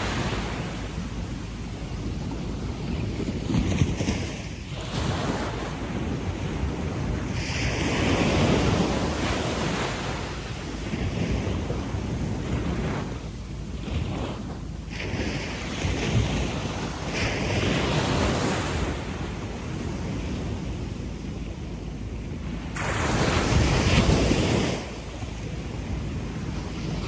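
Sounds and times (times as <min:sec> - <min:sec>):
steady low rumble: 0:00.0 - 0:04.9, 0:10.1 - 0:17.4
sea waves washing on sand: 0:00.0 - 0:27.0.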